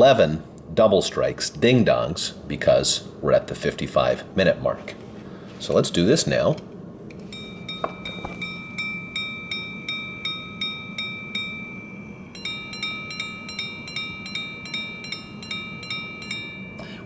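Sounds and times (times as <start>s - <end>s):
pocket watch striking on gongs: 6.5s - 17.0s
two-tone gong strikes: 7.2s - 17.0s.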